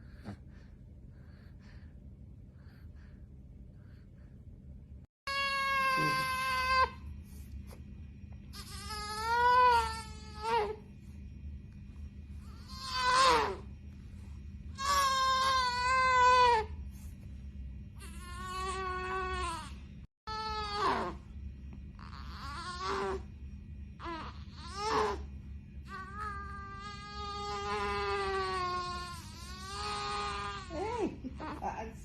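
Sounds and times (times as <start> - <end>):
newborn baby crying: 5.3 - 7.0, 8.5 - 10.8, 22.0 - 23.2, 25.9 - 31.6.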